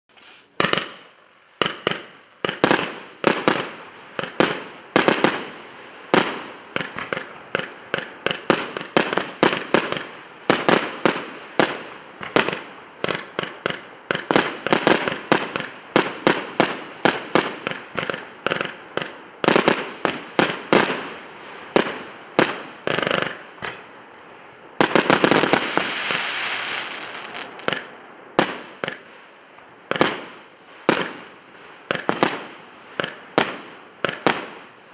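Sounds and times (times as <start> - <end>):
firework crackling: 0.1 - 11.8, 24.8 - 29.4
firework bangs: 0.2 - 18.8, 24.8 - 29.1.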